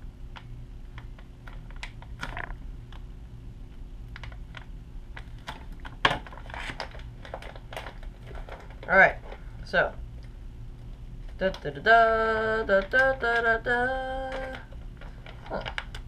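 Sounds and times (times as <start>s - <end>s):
low steady hum: 0.0s - 16.0s
plastic packaging clicks and crackles: 0.4s - 3.0s, 4.1s - 9.4s, 14.3s - 16.0s.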